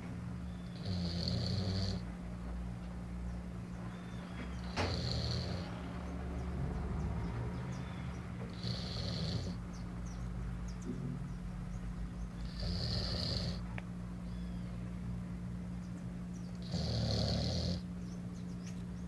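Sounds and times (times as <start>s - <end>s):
pet snoring: 0.5s - 2.1s, 4.5s - 5.9s, 8.4s - 9.6s, 12.4s - 13.7s, 16.6s - 17.9s.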